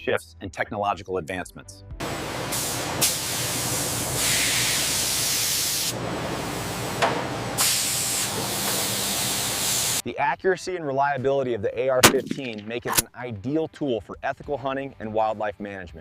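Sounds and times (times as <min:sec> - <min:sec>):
loud steady hissing: 0:02.1 - 0:10.0.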